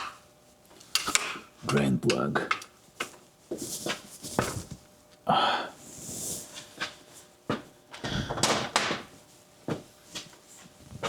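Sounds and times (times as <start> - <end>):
hand tools knocking and clanking: 1.0 - 2.7.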